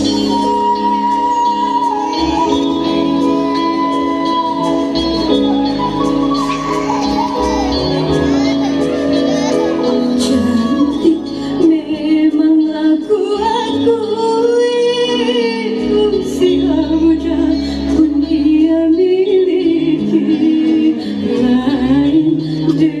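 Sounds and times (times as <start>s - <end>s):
instrumental backing music: 0.0s - 23.0s
woman singing: 9.9s - 23.0s.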